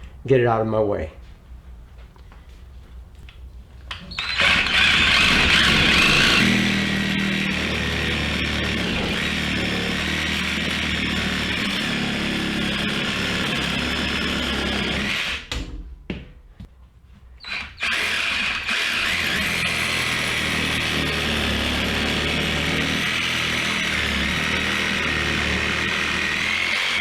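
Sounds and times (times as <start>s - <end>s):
reciprocating saw cutting rubber: 4.1s - 15.5s, 17.4s - 27.0s.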